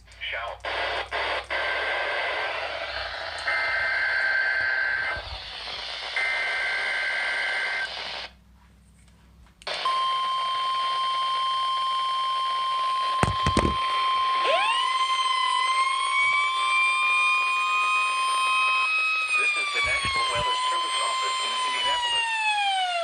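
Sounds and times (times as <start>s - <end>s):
radio static hiss: 0.0s - 8.4s, 19.2s - 22.3s
clicks: 3.3s - 3.6s, 13.2s - 13.9s
steady warning alarm tone: 9.8s - 23.0s
warbling two-tone data bursts: 17.7s - 22.3s.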